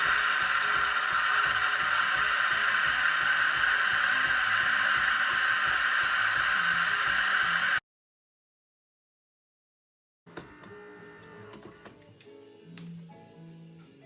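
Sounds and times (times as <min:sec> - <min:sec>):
espresso machine hissing: 0:00.0 - 0:07.8
pump throbbing: 0:00.0 - 0:07.8.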